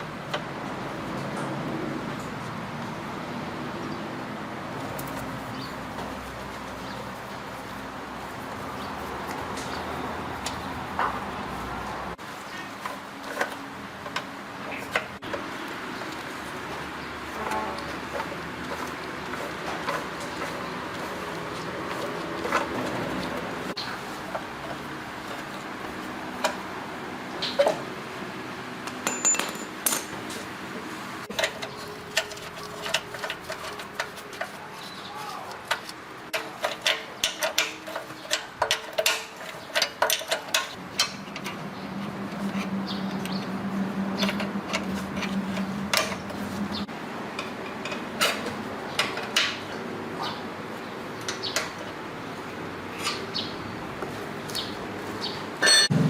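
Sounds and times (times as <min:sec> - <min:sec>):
sharp metal clicks and taps: 0:35.5 - 0:41.6.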